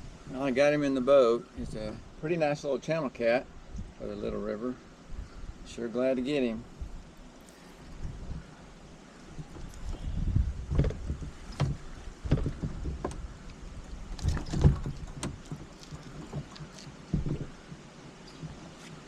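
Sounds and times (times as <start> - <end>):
knocks against kayak hull: 10.7 - 13.2, 14.2 - 17.8.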